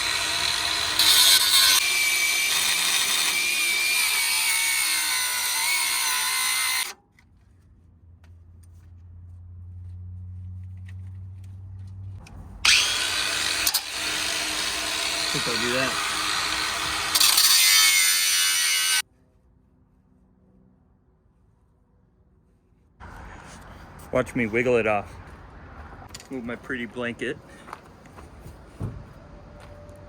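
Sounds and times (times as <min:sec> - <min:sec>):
angle grinder cutting metal: 0:00.0 - 0:07.0, 0:12.6 - 0:19.0.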